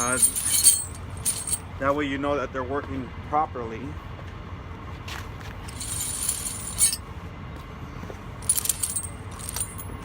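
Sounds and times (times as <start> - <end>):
metal tire chain jangling: 0.0 - 1.7, 5.6 - 7.0, 8.4 - 10.0
steady low rumble: 0.0 - 1.8.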